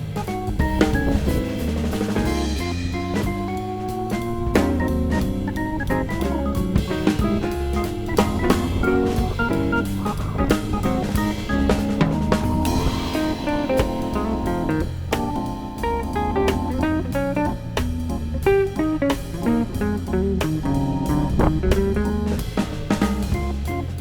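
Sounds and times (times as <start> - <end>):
background music with drum kit: 0.0 - 24.0.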